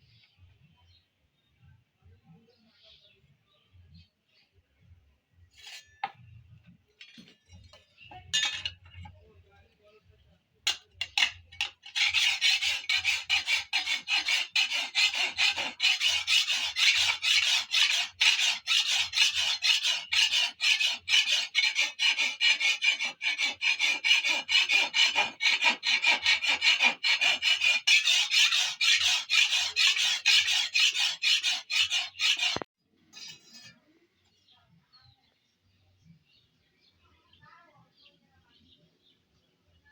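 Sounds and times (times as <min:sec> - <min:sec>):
hand file rasping on metal: 0:10.7 - 0:32.7.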